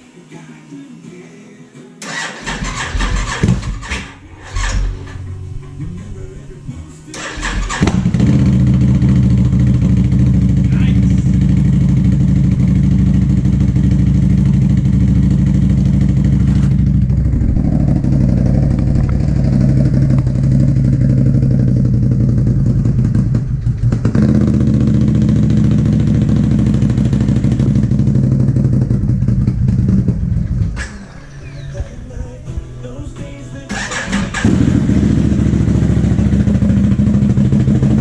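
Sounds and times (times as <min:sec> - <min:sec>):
quad bike engine running hard: 0:07.3 - 0:30.9, 0:33.7 - 0:38.0.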